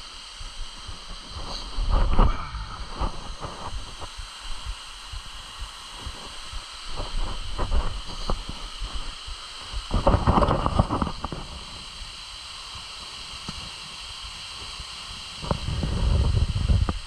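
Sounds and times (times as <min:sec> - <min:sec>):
rush of noise: 0:00.0 - 0:12.8
steady hiss: 0:00.0 - 0:17.0
low rumbling: 0:01.1 - 0:04.1.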